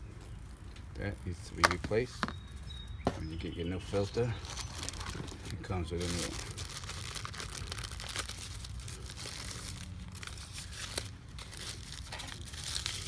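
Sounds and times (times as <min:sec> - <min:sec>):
hands rustling plastic: 0:03.4 - 0:13.0.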